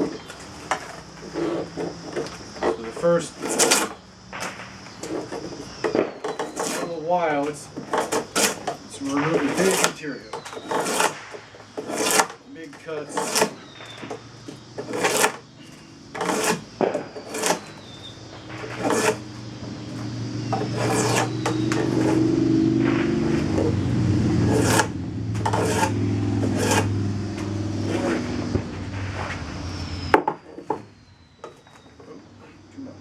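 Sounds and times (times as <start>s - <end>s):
drawknife scraping wood: 0.0s - 4.0s, 5.0s - 7.0s, 7.8s - 17.9s, 18.6s - 19.3s, 20.5s - 22.3s, 24.4s - 27.0s, 27.8s - 28.3s
low motor hum: 17.8s - 31.2s.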